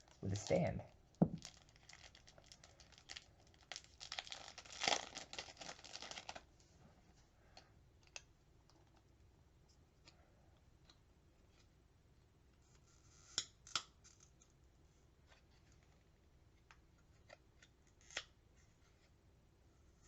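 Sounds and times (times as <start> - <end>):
packaging crinkling: 1.3 - 6.5.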